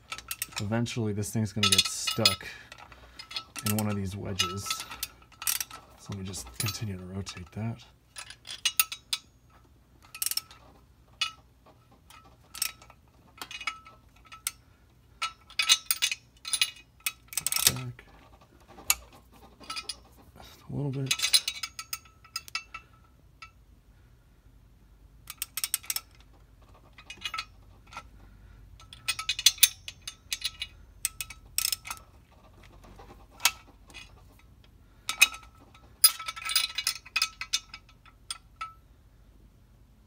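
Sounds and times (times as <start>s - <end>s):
wrench clinking against metal: 0.0s - 11.4s, 12.1s - 14.6s, 15.2s - 18.0s, 19.6s - 20.1s, 20.8s - 23.6s, 25.3s - 28.1s, 28.8s - 32.1s, 33.4s - 38.8s.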